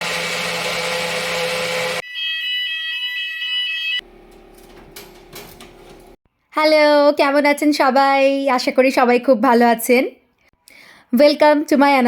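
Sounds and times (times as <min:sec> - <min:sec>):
fire alarm shrill tone: 0:01.9 - 0:05.6.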